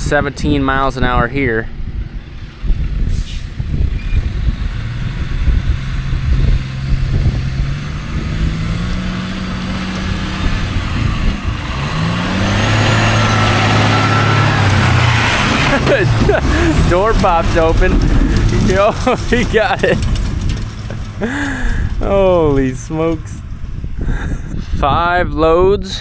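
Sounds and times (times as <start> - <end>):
truck engine accelerating: 0.0 - 24.9.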